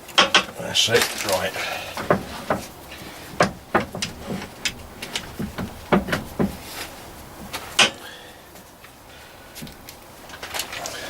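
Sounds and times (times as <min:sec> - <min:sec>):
wooden chisel scraping lathe: 0:01.5 - 0:07.7.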